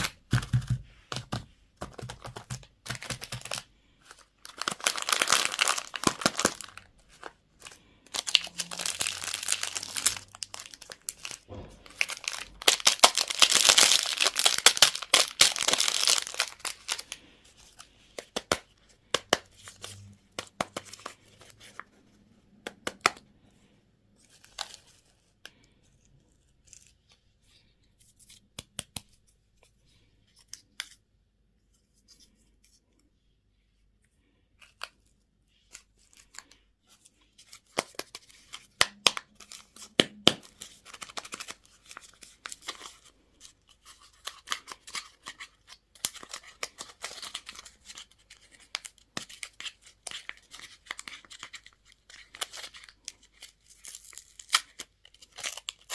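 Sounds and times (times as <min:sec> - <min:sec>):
plastic packaging crackling: 0:01.9 - 0:17.2.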